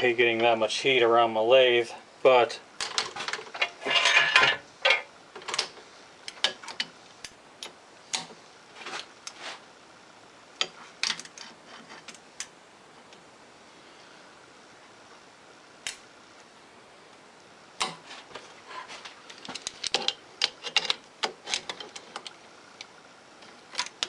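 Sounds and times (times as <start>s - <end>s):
light clicks and metallic knocks: 19.0s - 24.0s.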